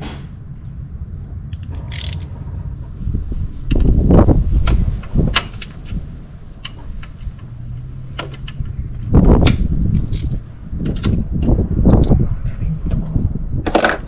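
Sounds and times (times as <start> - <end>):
metal hand tools clicking: 1.8 - 2.2.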